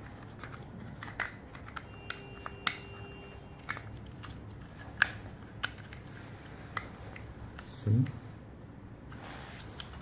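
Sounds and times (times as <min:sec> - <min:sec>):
cable plugs clicking: 0:03.6 - 0:06.1.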